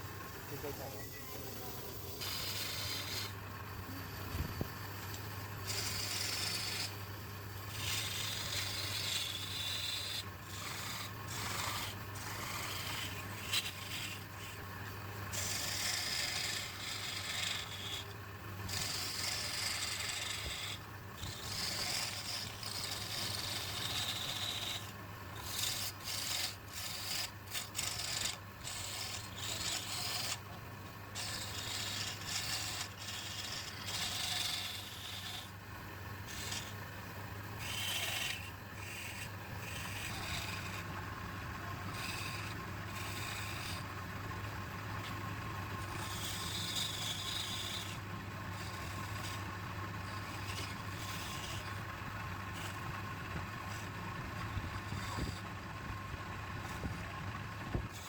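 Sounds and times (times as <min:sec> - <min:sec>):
rubbing hiss on spinning wood: 0:00.0 - 0:30.5, 0:52.4 - 0:55.5
lathe motor hum: 0:00.0 - 0:58.0.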